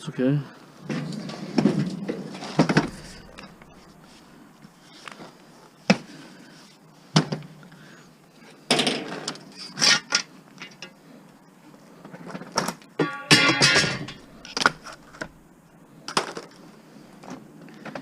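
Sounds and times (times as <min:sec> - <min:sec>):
scrap metal parts clanking: 0:00.9 - 0:04.1, 0:13.0 - 0:15.4
ringing metal clatter: 0:02.8 - 0:04.0, 0:13.0 - 0:15.4.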